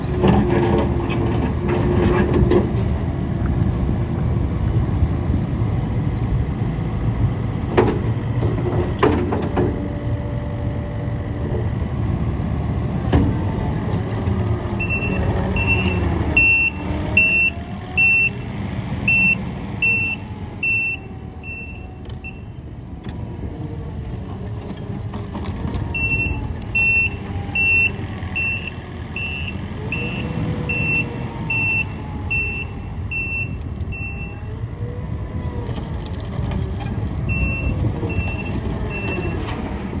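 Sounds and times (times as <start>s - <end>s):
loader engine running: 0.0s - 40.0s
reversing alarm beeps: 14.8s - 18.5s, 19.1s - 22.5s, 26.0s - 34.5s, 37.3s - 39.4s.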